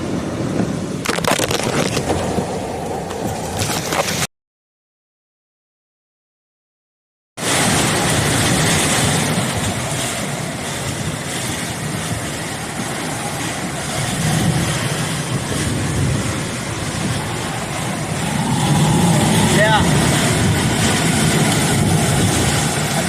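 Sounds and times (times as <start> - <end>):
gusting wind: 0.0 - 4.3, 7.4 - 23.0
torrential rain: 7.4 - 23.0.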